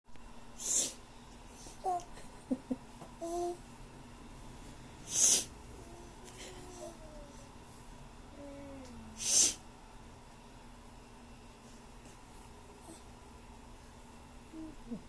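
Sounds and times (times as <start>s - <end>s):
runny nose sniffs: 0.6s - 1.0s, 5.1s - 5.5s, 9.2s - 9.6s.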